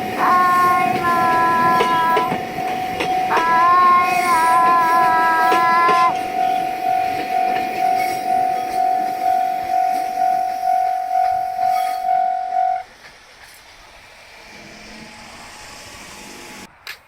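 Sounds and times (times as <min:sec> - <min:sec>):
level-crossing warning bell ringing: 0:00.0 - 0:12.9.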